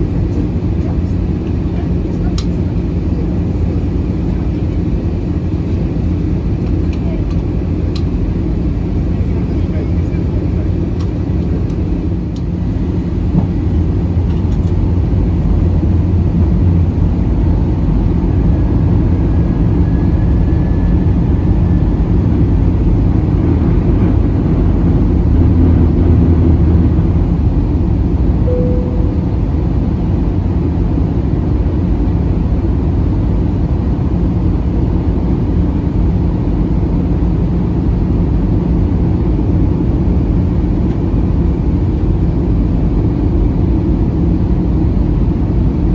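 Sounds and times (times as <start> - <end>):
airplane cabin engine rumble: 0.0 - 45.9
short tone: 28.4 - 30.0
faint whine: 28.4 - 30.2.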